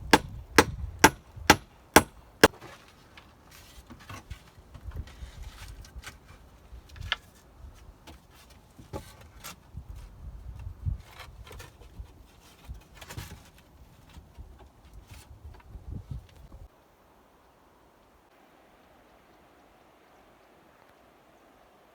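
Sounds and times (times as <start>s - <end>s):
building work knocks and taps: 0.0s - 2.1s.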